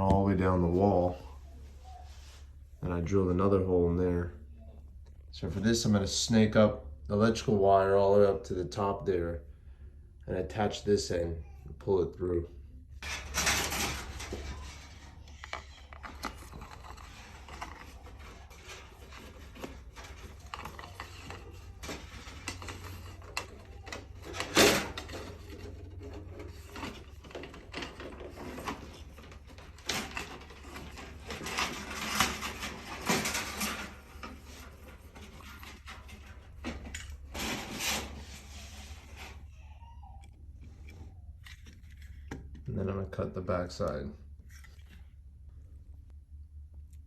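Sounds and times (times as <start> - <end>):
cable rustling and clicking: 13.0 - 39.4.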